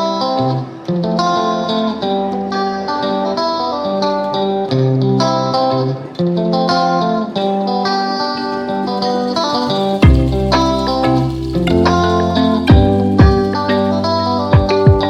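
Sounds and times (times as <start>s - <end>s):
plucked guitar music: 0.0s - 15.0s.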